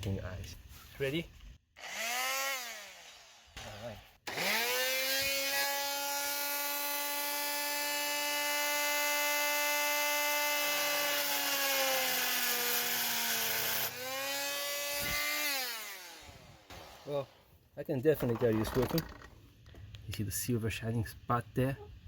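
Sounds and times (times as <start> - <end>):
power tool cutting metal bolt: 1.8 - 17.1.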